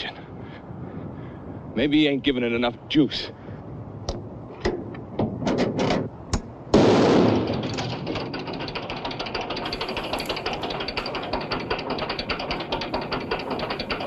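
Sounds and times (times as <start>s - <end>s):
engine starting and running: 7.1s - 14.0s
knocks and clicks: 7.3s - 14.0s.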